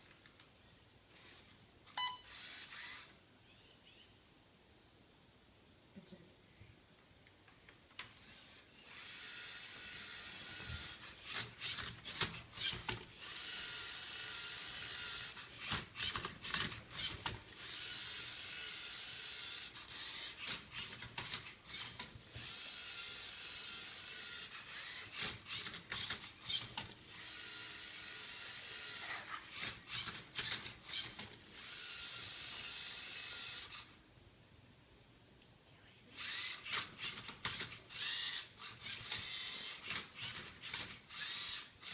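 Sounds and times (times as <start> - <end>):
electric motors whirring: 2.3 - 3.2, 8.0 - 34.0, 36.1 - 41.9.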